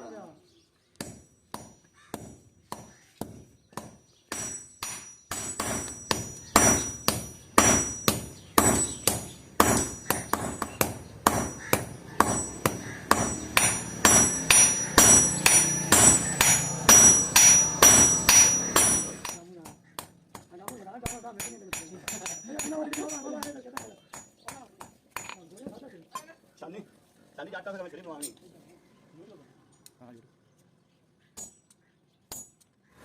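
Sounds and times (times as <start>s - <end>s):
hammer striking steel on anvil: 1.0s - 24.4s.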